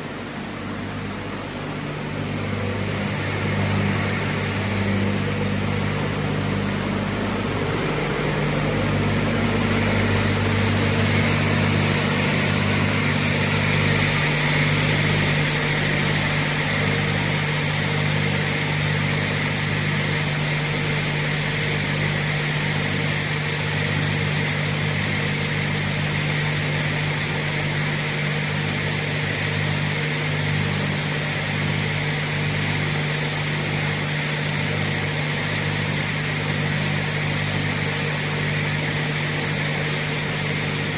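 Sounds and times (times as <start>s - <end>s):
saw motor deep hum: 0.0s - 40.9s.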